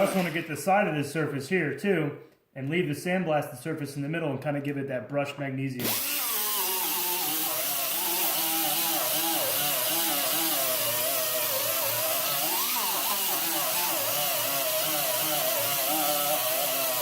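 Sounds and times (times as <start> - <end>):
die grinder whining: 0.0 - 0.6, 5.8 - 17.0.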